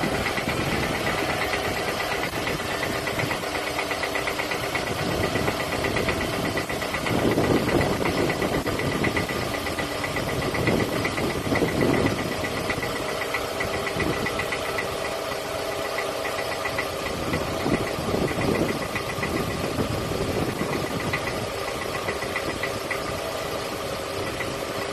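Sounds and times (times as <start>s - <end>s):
car engine metallic knocking: 0.0s - 24.9s.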